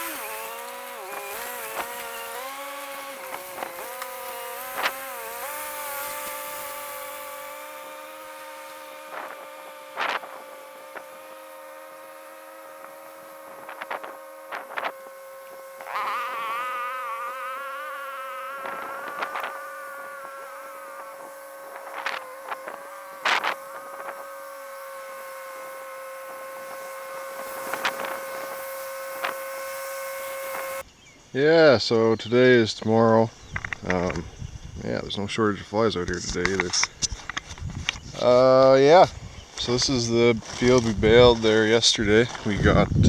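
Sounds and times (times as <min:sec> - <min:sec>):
flies buzzing: 0:00.0 - 0:31.3.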